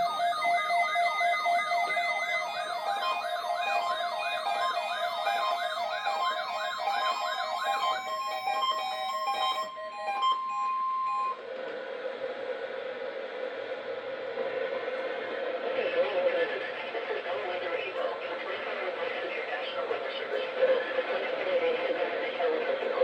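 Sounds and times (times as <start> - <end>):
electronic siren-like warble: 0.0 - 11.4.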